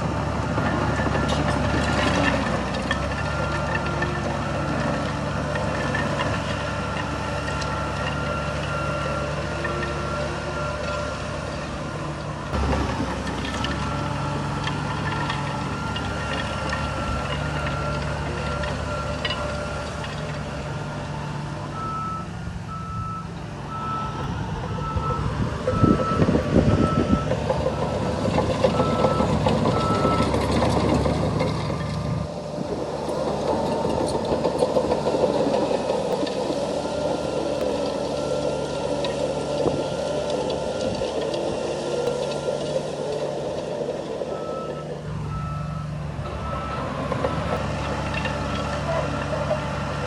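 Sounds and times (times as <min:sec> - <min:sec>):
heavy machinery diesel engine: 0:00.0 - 0:50.0
reversing alarm beeping: 0:06.7 - 0:11.2, 0:21.7 - 0:31.0, 0:44.2 - 0:47.6.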